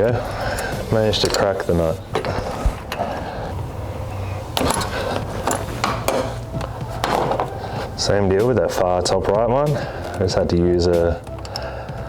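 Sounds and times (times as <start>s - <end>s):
low steady hum: 0.0s - 12.0s
tools clinking on metal bolts: 0.3s - 3.2s, 4.6s - 7.6s.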